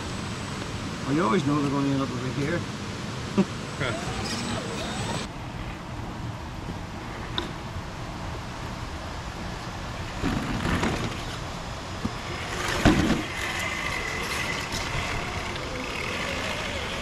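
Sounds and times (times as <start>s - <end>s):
outdoor rumble: 0.0s - 17.0s
electric motor and gears whining: 3.7s - 17.0s.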